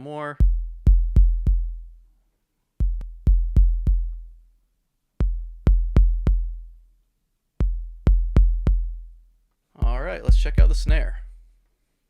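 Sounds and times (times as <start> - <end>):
drum machine kick hits: 0.4 - 2.0, 2.8 - 4.4, 5.2 - 6.8, 7.6 - 9.2, 9.8 - 11.3.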